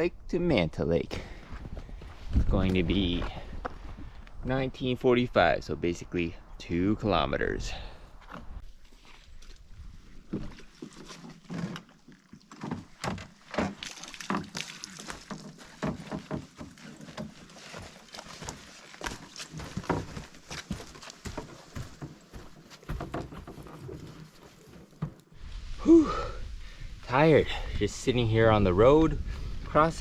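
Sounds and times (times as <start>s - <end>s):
irregular footfalls: 12.6s - 25.4s.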